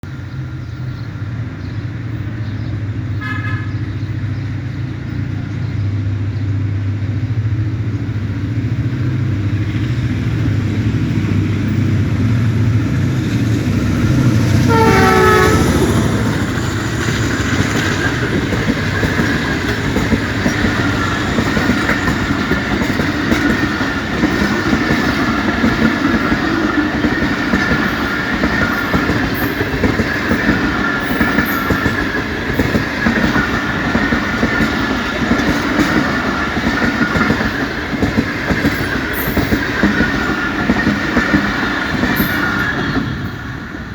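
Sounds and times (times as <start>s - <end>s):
diesel locomotive engine drone: 0.0s - 43.9s
train coaches clickety-clack: 0.1s - 43.9s
train horn blasts: 3.2s - 3.8s, 14.6s - 16.3s.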